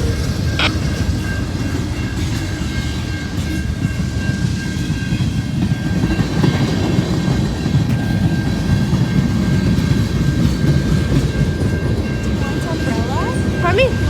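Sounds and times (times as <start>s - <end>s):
freight train rumbling past: 0.0s - 14.0s
wheels clattering on rails: 0.0s - 14.0s.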